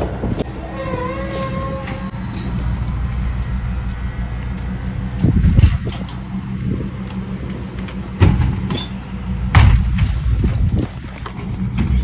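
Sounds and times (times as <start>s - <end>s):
motor vehicle rumbling: 0.0s - 12.0s.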